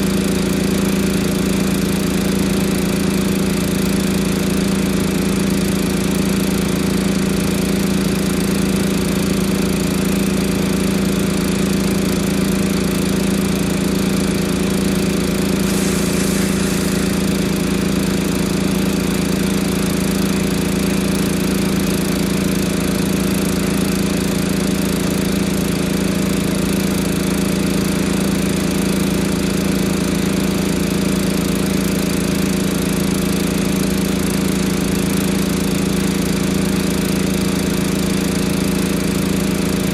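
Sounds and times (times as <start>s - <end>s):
engine running steadily: 0.0s - 39.9s
short faint hiss: 15.6s - 18.0s.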